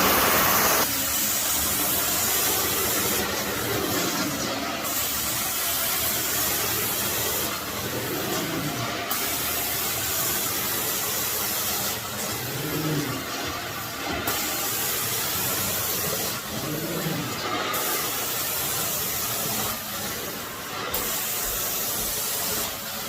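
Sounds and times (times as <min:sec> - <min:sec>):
carpet extraction wand hissing: 0:00.0 - 0:23.0.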